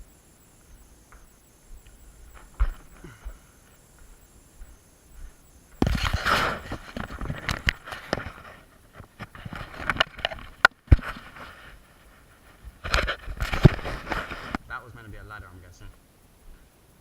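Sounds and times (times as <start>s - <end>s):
sharp clicks: 0.0s - 11.2s
rustling scramble on ladder: 0.1s - 15.1s.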